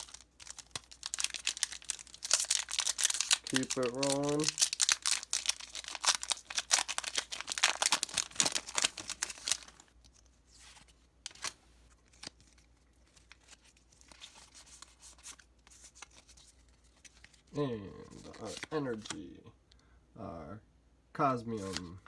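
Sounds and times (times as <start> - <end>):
foil wrapper tearing and crinkling: 0.0 - 9.8
cards being handled: 0.0 - 19.2, 21.6 - 22.0.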